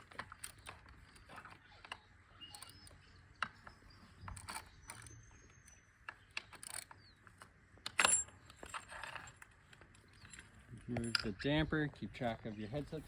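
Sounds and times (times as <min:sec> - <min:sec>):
metallic clicks and clinks: 0:07.8 - 0:11.5.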